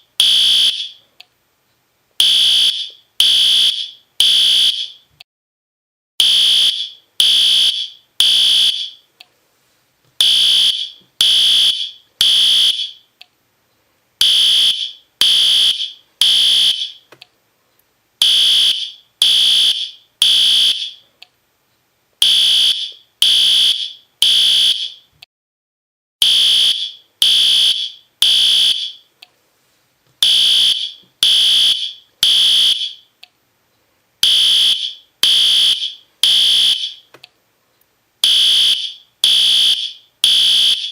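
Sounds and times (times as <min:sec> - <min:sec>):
fire alarm horn blasts: 0:00.2 - 0:01.0, 0:02.2 - 0:05.0, 0:06.2 - 0:09.0, 0:10.2 - 0:13.0, 0:14.2 - 0:17.0, 0:18.2 - 0:21.0, 0:22.2 - 0:25.1, 0:26.2 - 0:29.1, 0:30.2 - 0:33.1, 0:34.2 - 0:37.1, 0:38.2 - 0:40.9.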